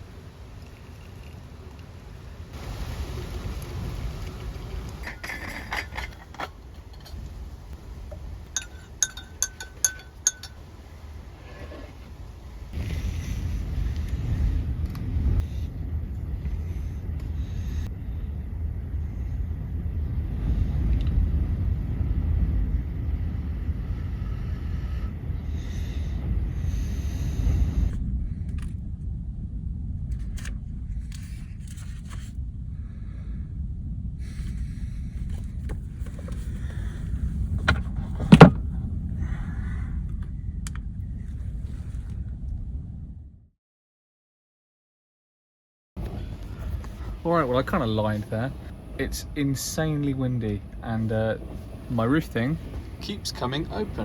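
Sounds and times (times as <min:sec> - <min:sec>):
low wind rumble: 0:00.0 - 0:43.6, 0:46.0 - 0:54.0
knocks and rattles: 0:04.7 - 0:10.7
small objects clinking: 0:08.5 - 0:10.6.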